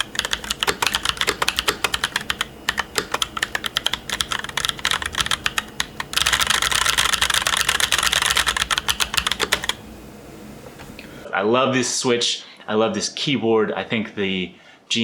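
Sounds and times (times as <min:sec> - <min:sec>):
typing on mechanical keyboard: 0:00.0 - 0:09.8.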